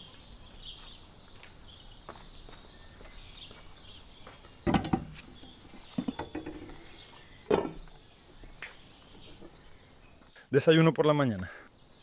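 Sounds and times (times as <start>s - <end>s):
faint birdsong chirping: 0.0s - 12.0s
sharp knocks and clatters: 4.6s - 6.8s.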